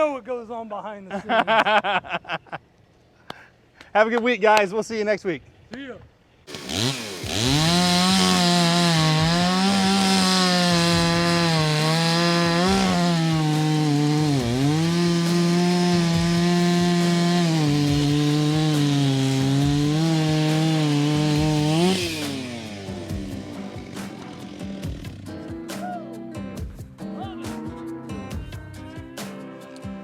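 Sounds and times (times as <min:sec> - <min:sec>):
chainsaw cutting wood: 0:06.5 - 0:25.5.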